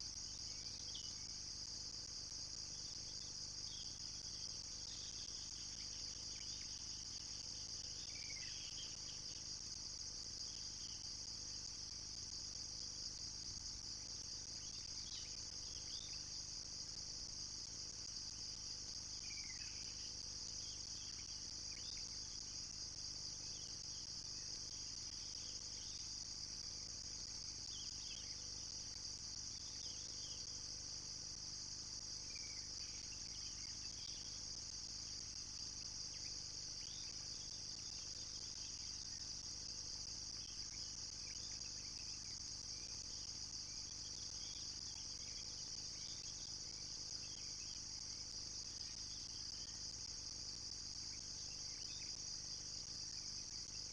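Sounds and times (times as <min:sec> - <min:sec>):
chorus of night insects: 0:00.0 - 0:53.9.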